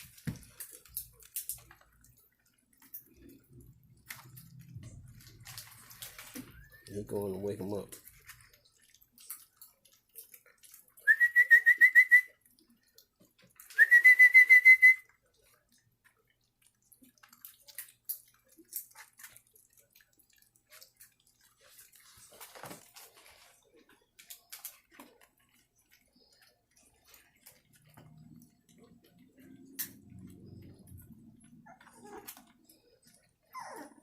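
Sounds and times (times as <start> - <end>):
person whistling a warbling trill: 11.1 - 12.3, 13.8 - 15.1.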